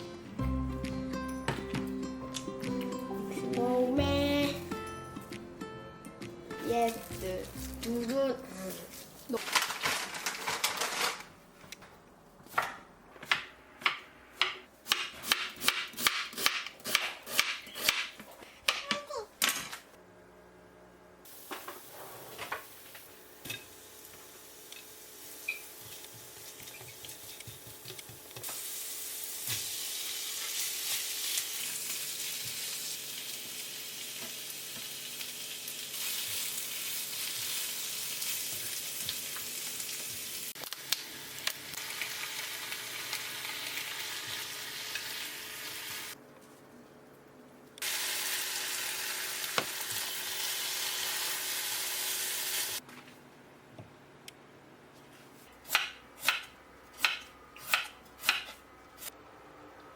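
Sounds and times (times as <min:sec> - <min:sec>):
food sizzling in frying pan: 0:21.3 - 0:27.6, 0:28.4 - 0:46.2, 0:47.8 - 0:52.8.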